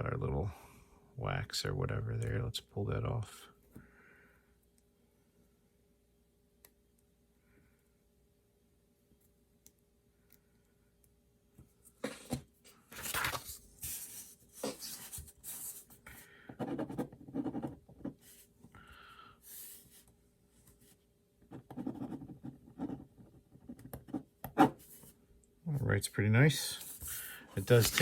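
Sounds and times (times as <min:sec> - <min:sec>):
pen scratching on paper: 0:13.9 - 0:15.9, 0:16.6 - 0:18.4, 0:21.5 - 0:25.0.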